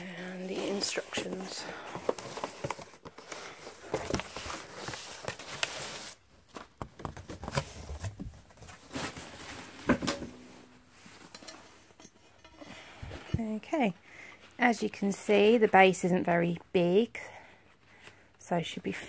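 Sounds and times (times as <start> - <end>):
packaging and paper rustling: 0.3 - 9.9.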